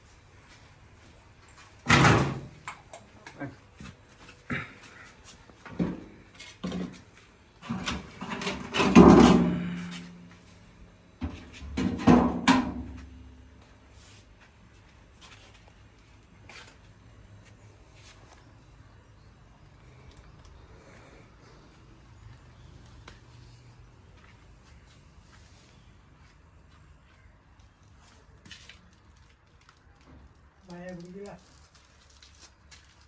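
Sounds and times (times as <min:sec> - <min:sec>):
wooden knocks and scrapes: 0:07.6 - 0:10.3, 0:11.2 - 0:13.3
loud clattering knocks: 0:07.9 - 0:10.1, 0:11.2 - 0:13.1.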